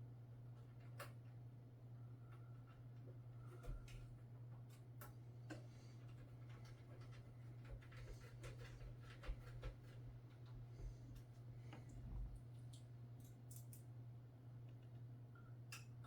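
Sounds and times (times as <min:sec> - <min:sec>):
steady low hum: 0:09.8 - 0:15.7.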